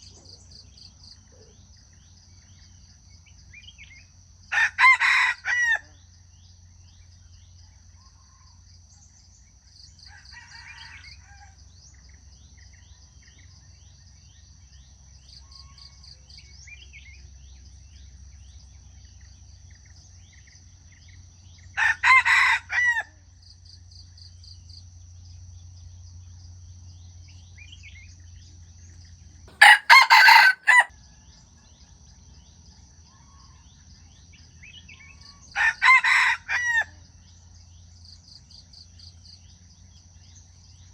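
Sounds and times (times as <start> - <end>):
rooster crowing: 4.5 - 5.8, 29.6 - 30.9, 35.6 - 36.9.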